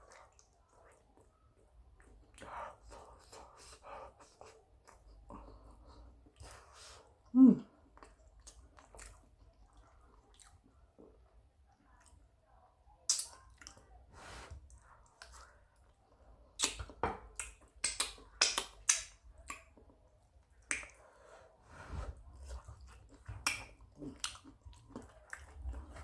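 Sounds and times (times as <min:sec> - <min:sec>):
person chewing food: 0:00.0 - 0:12.3, 0:13.1 - 0:26.0
wet mouth clicks: 0:13.1 - 0:13.8, 0:16.6 - 0:19.7, 0:20.6 - 0:21.0.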